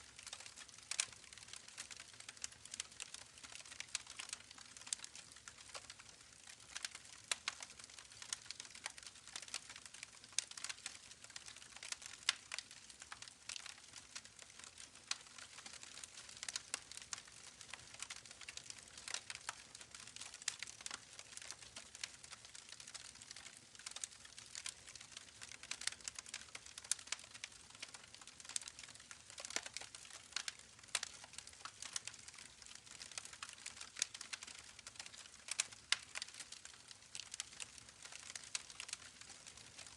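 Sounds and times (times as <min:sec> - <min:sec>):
campfire pops and snaps: 0:25.4 - 0:39.0.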